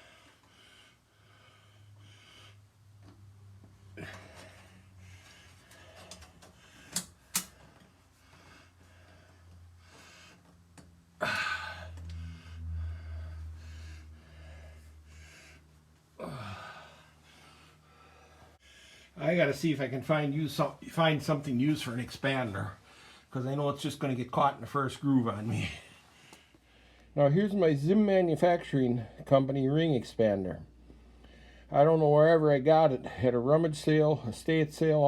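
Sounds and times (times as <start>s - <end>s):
steady low hum: 0.0s - 35.0s
sharp clicks: 6.9s - 7.6s.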